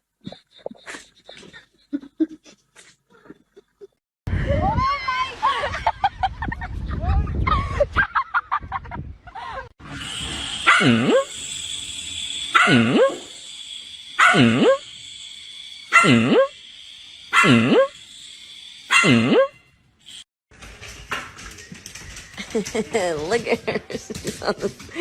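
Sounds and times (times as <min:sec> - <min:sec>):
dog barking: 0:10.6 - 0:11.3, 0:12.6 - 0:13.2, 0:14.2 - 0:14.8, 0:15.9 - 0:16.5, 0:17.3 - 0:17.9, 0:18.9 - 0:19.5.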